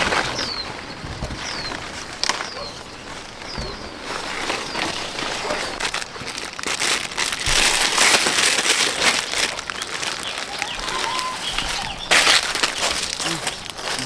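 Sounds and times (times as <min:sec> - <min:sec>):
rustling and crinkling: 0:00.0 - 0:14.0.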